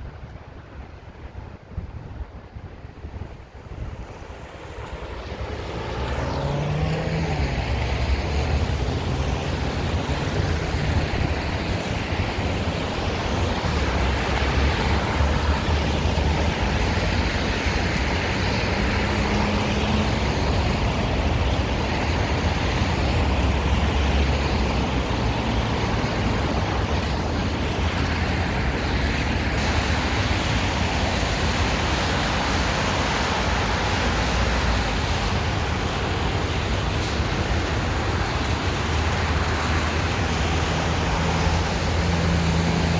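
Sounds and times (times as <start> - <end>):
cars going by: 2.8 - 42.9
passing engine note: 4.6 - 17.2.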